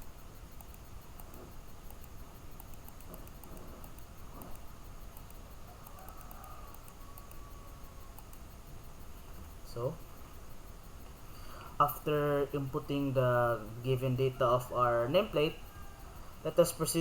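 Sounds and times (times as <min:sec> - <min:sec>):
low background hiss: 0:00.0 - 0:17.0
faint ticks: 0:00.1 - 0:08.6.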